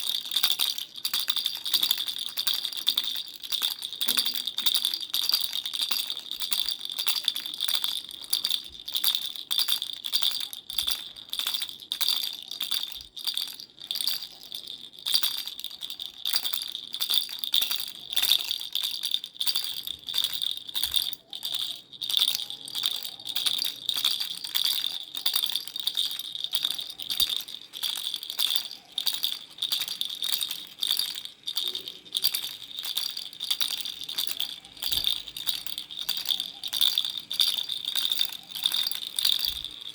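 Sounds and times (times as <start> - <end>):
baby rattle shaken: 0.0 - 39.9
bright jingling ring: 13.8 - 39.9.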